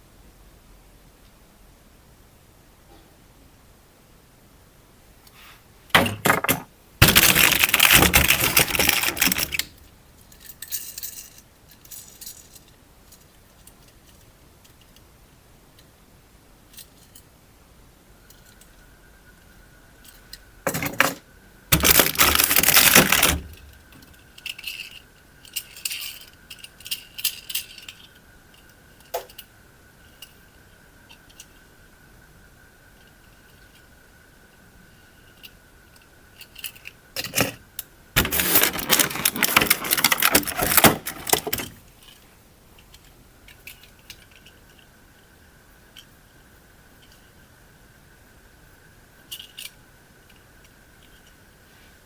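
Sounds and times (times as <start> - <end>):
hard objects rattling and clattering: 5.9 - 12.6, 20.7 - 28.1, 38.2 - 42.2.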